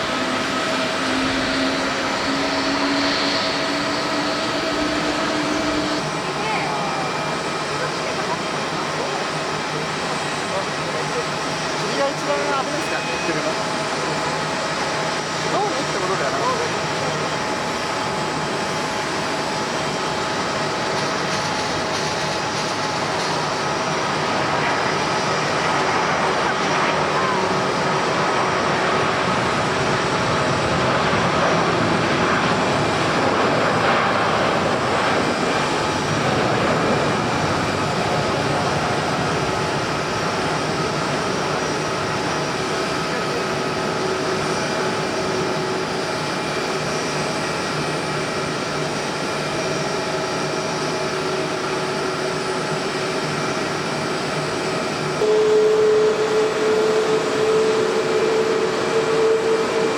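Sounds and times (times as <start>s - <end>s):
jet engines whining: 0.0s - 59.9s
rising engine tone: 0.1s - 6.0s.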